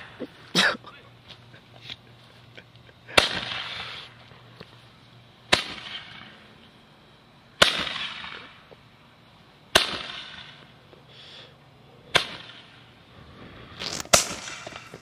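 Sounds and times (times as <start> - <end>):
hiss of burning ball: 12.1 - 15.0.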